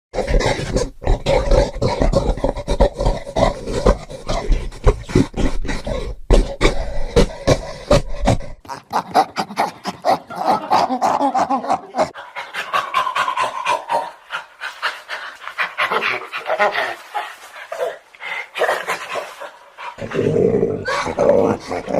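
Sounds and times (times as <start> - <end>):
ape grunting and panting: 0.2 - 17.1.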